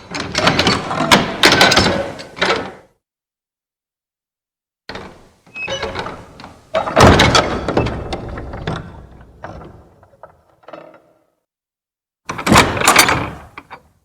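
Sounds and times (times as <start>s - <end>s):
wooden door rattling and knocking: 4.9s - 11.0s, 12.3s - 13.8s
heavy door thud: 6.8s - 9.9s.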